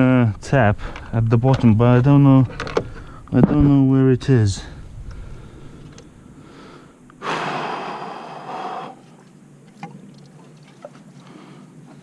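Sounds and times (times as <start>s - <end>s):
person exhaling heavily: 6.4s - 9.0s.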